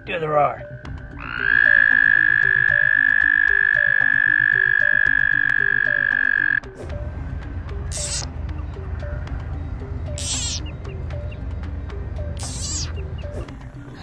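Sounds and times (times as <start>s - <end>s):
frog high-pitched call: 1.1s - 6.7s, 7.9s - 8.3s, 10.1s - 10.7s, 12.3s - 13.0s.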